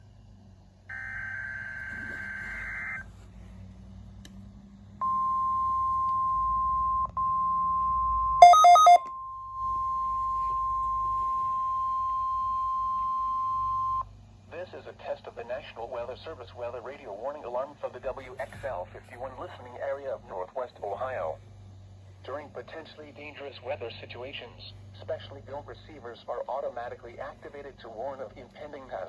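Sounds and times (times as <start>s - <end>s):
steady alarm tone: 8.4s - 9.0s
quick beeps: 8.4s - 9.1s.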